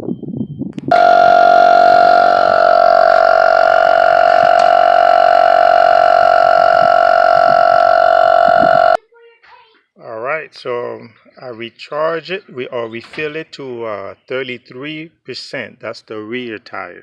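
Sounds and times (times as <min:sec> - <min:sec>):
air compressor whining: 0:00.8 - 0:09.0.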